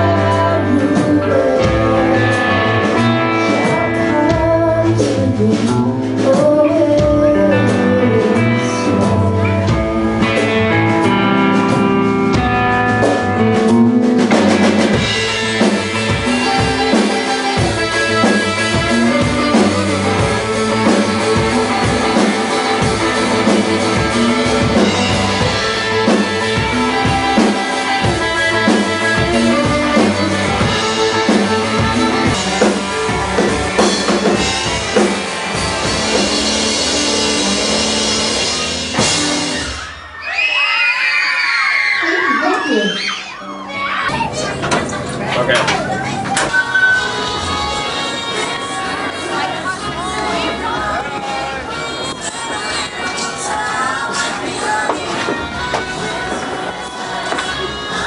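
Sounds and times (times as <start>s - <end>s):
person singing: 0.0s - 13.7s, 15.1s - 35.2s, 46.6s - 58.0s
live band playing: 0.0s - 58.0s.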